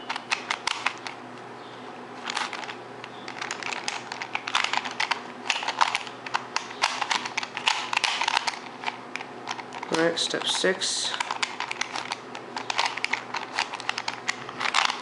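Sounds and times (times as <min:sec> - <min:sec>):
plastic puzzle cube clicking: 0:00.1 - 0:01.2, 0:02.2 - 0:15.0.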